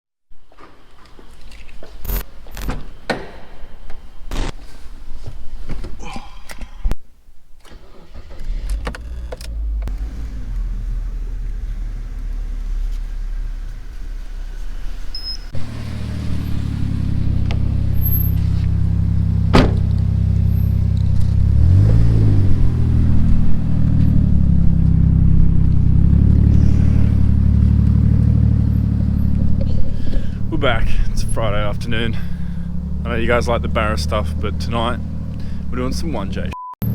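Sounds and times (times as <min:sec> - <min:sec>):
car engine running: 0:07.8 - 0:36.9.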